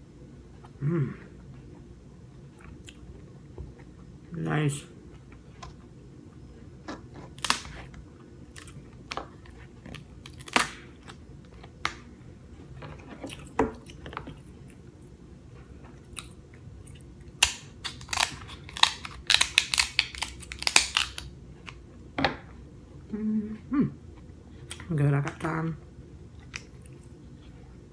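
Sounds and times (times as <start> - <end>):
crab shell cracking: 7.4 - 7.8, 10.2 - 12.0, 17.4 - 21.3.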